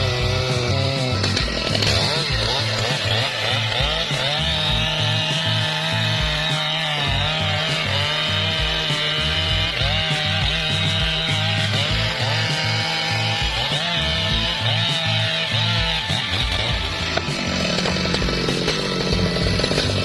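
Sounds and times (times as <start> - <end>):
background music with low beat: 0.0 - 20.0
chainsaw cutting wood: 0.0 - 20.0.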